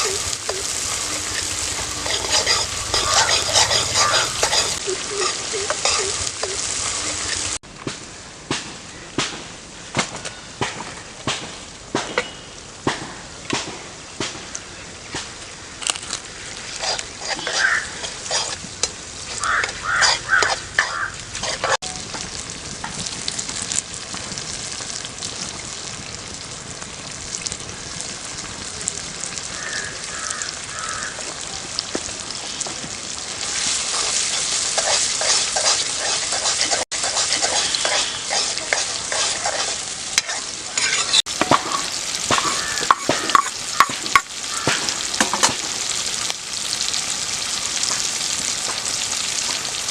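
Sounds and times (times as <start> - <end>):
food sizzling in a pan: 0.0 - 7.6, 15.4 - 49.9
spoon scraping a pan: 0.0 - 7.6, 16.6 - 18.6, 19.4 - 21.8, 33.6 - 45.8.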